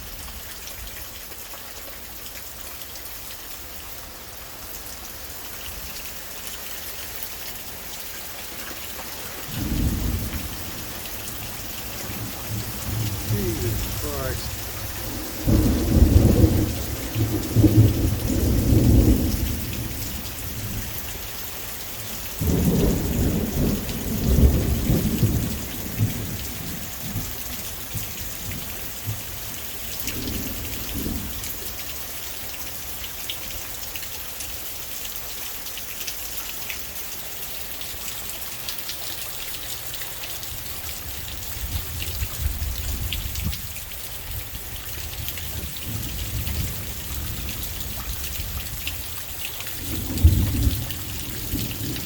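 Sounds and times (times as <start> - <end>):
heavy rain hissing: 8.5 - 32.2
thunder rolling: 9.5 - 20.8.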